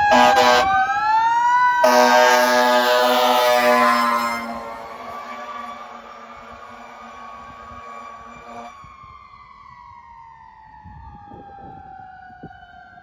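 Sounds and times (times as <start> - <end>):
fire engine air horn: 0.0 - 1.0, 1.8 - 8.9
rising siren tone: 0.0 - 13.0
siren winding down: 0.0 - 13.0.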